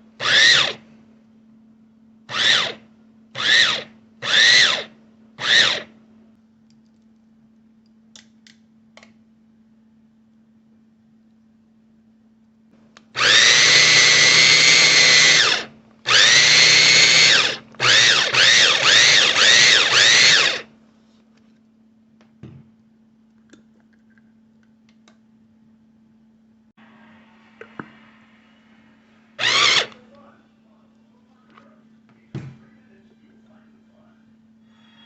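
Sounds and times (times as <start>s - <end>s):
food chopper motor whining: 0.2s - 0.8s, 2.3s - 2.8s, 3.4s - 5.9s, 13.2s - 20.7s, 29.4s - 30.0s.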